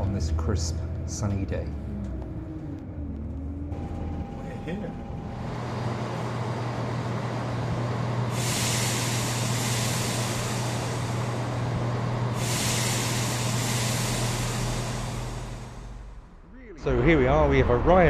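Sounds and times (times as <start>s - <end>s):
train engine humming: 0.0s - 18.0s
compressed air hiss: 8.3s - 11.6s, 12.3s - 16.0s.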